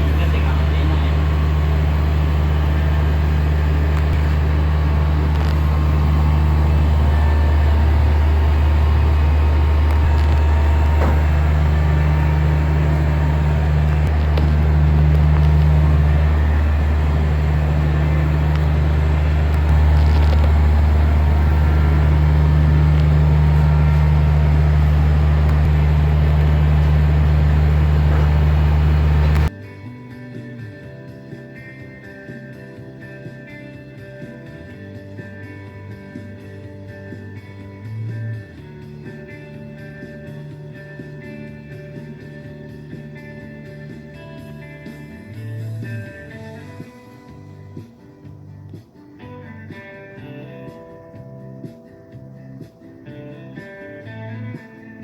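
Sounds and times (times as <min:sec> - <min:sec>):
air conditioner humming: 0:00.0 - 0:29.5.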